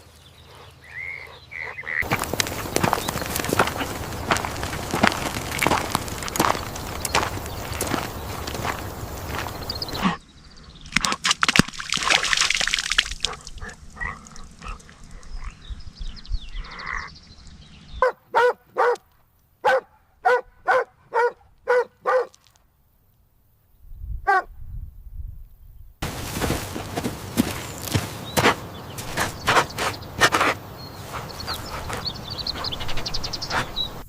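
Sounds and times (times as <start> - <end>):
scuffling and rustling: 2.0 - 10.1, 26.0 - 34.0
small dog barking: 18.0 - 19.0, 19.6 - 22.4, 24.3 - 24.5.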